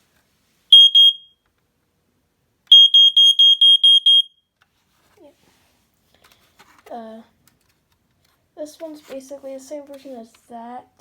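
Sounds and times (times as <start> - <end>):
smoke alarm rapid beeping: 0.7 - 1.3, 2.7 - 4.4.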